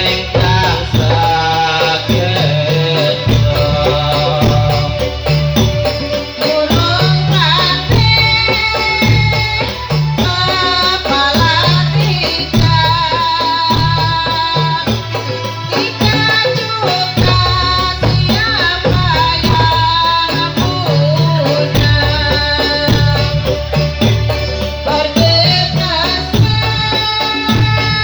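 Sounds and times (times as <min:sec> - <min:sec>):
hand drum rhythm: 0:00.0 - 0:28.0.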